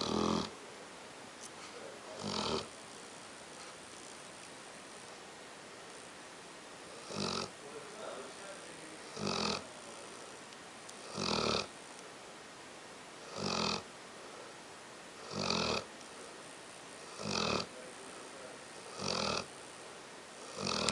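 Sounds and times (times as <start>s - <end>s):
pet snoring: 0.0s - 0.6s, 2.1s - 3.1s, 6.9s - 7.6s, 9.0s - 10.4s, 11.0s - 11.8s, 13.2s - 13.9s, 15.2s - 16.4s, 17.0s - 19.6s, 20.4s - 20.9s.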